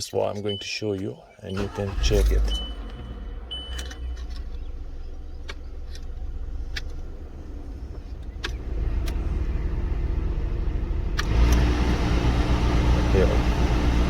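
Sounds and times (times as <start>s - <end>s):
irregular ticking: 2.5s - 9.2s.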